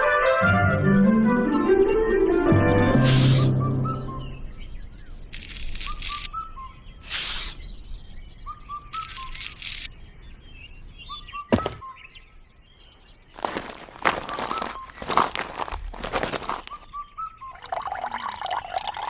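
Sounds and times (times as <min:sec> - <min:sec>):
bursts of hiss: 0:03.0 - 0:03.5, 0:07.0 - 0:07.6
birds chirping: 0:03.0 - 0:15.4, 0:16.4 - 0:19.0.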